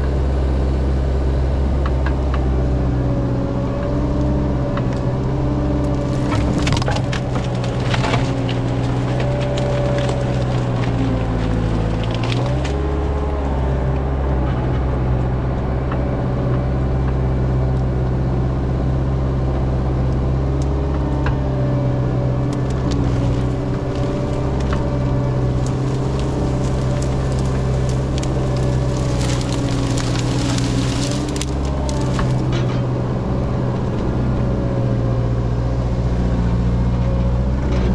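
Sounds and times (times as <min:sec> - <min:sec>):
diesel engine running: 0:00.0 - 0:37.9
sharp cracks and clicks: 0:25.5 - 0:32.6.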